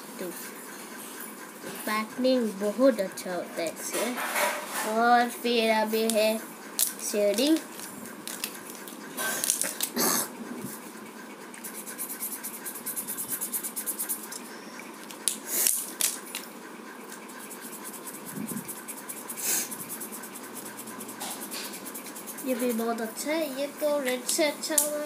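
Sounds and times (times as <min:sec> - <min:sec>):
felt-tip pen scratching on paper: 0:11.6 - 0:14.7, 0:17.1 - 0:24.4
rubbing on paper: 0:11.6 - 0:14.7, 0:17.0 - 0:25.0.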